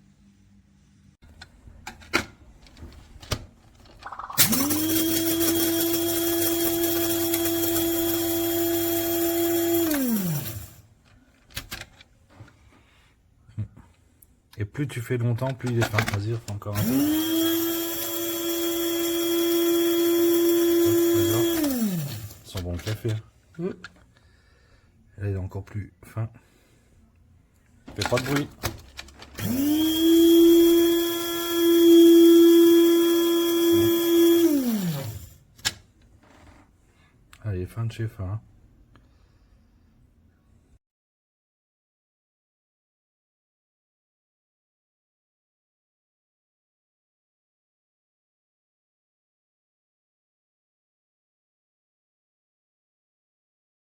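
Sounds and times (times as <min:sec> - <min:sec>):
coffee grinder whining: 0:04.0 - 0:10.8, 0:16.4 - 0:23.0, 0:29.1 - 0:35.4.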